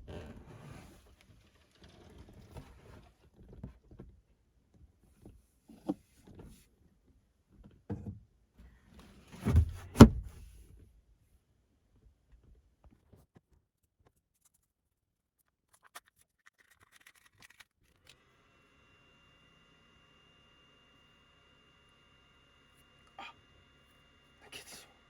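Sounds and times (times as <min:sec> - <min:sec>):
heavy thump: 0:09.4 - 0:10.5.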